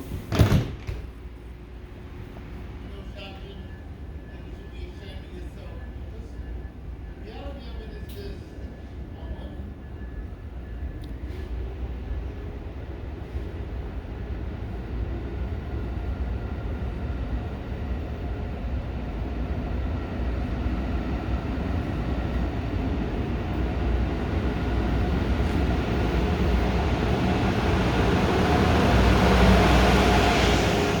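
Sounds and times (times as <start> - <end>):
train rumbling: 0.0 - 31.0.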